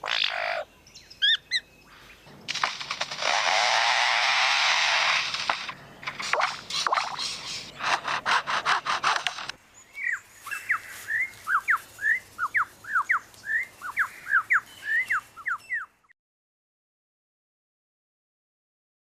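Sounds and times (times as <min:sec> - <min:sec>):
bird mimicking chainsaw buzz: 0:03.0 - 0:05.7.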